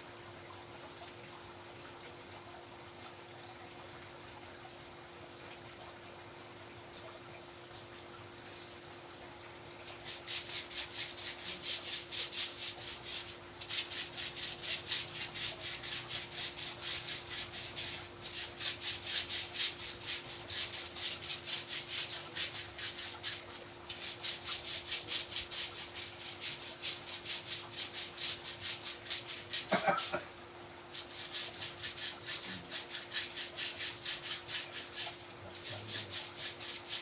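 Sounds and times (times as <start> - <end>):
massage strokes rubbing skin: 10.0 - 29.8, 30.9 - 37.0.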